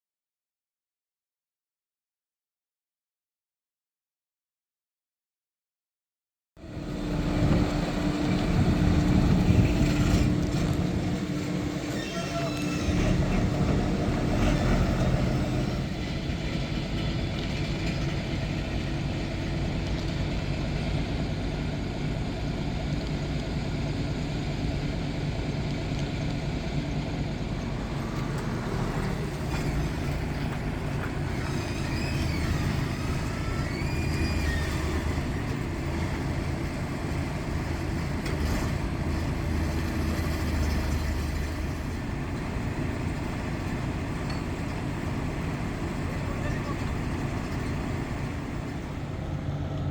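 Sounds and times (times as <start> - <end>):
diesel engine rumbling: 6.6 - 49.9.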